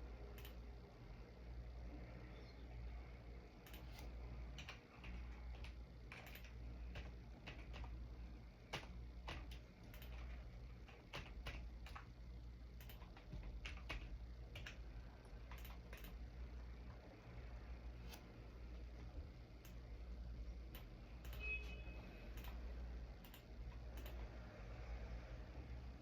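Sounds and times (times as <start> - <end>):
low steady hum: 0.0 - 26.0
computer keyboard typing: 0.3 - 0.6, 3.6 - 8.0, 8.6 - 12.1, 12.8 - 16.2, 20.7 - 21.5, 22.3 - 22.6, 23.2 - 24.2.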